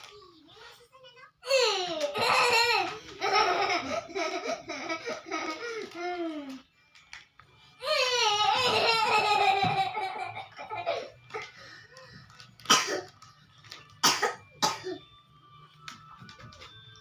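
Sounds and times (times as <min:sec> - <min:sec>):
child coughing: 0:12.6 - 0:13.1, 0:14.0 - 0:15.0.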